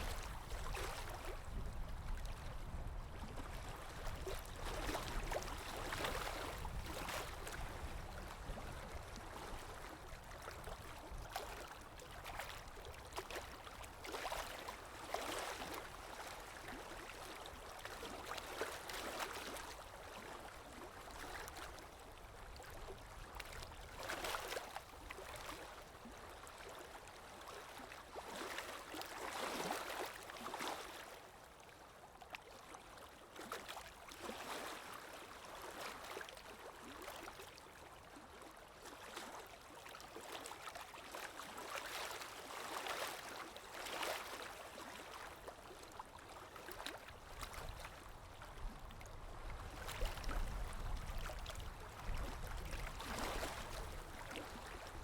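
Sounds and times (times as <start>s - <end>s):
water lapping: 0.0s - 55.0s.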